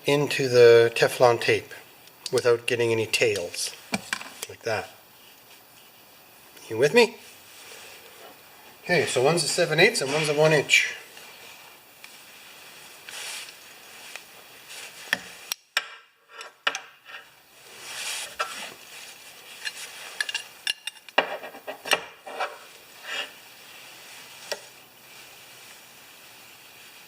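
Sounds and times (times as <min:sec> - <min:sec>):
metal fittings clinking and scraping: 0:19.5 - 0:21.1.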